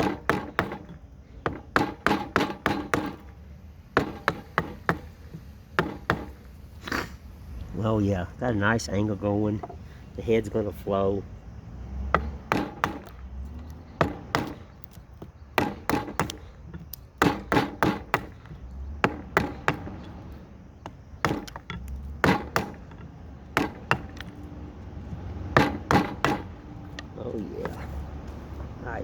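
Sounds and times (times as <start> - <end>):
hatchet chopping wood: 0.0 - 6.5, 12.0 - 27.8.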